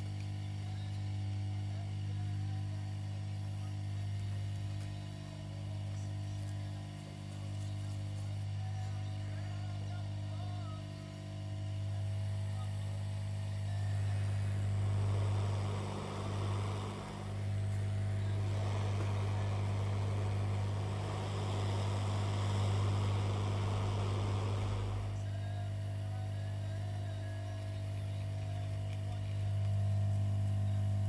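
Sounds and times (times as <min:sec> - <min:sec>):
constant low hum: 0:00.0 - 0:31.0
hot air blower rushing: 0:13.8 - 0:25.3.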